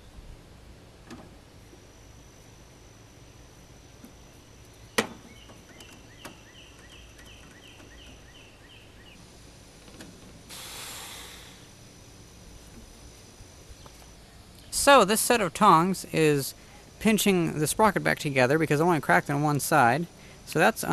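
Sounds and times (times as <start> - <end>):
short burst of hiss: 10.5 - 11.7.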